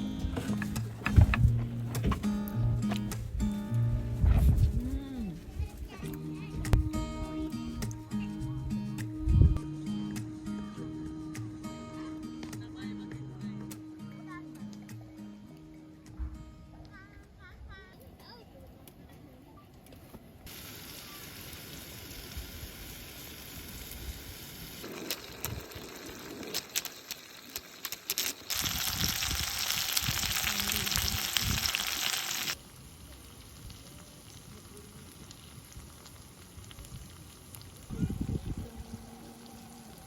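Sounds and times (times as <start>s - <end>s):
food sizzling in a hot pan: 20.5s - 40.0s.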